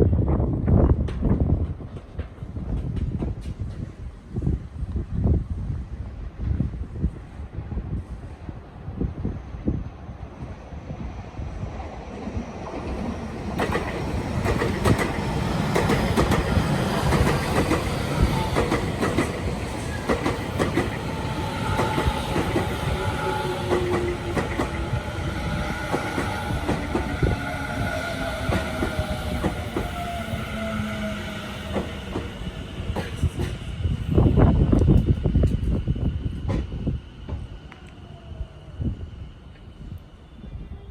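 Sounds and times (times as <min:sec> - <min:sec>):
electric train running: 0:12.6 - 0:37.9
wheels clacking over rail joints: 0:13.5 - 0:25.0
train whine falling in pitch: 0:13.6 - 0:32.6.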